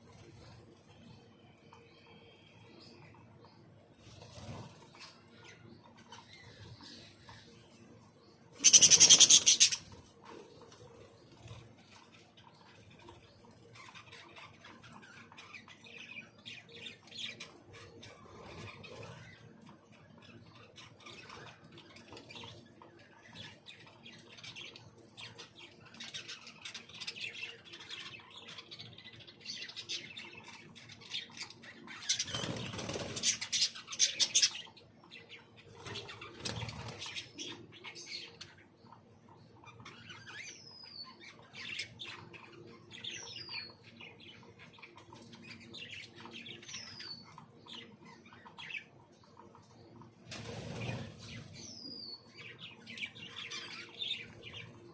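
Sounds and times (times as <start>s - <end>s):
birds chirping and squawking: 4.0s - 54.9s
birds flapping wings: 32.2s - 33.7s, 50.3s - 51.4s.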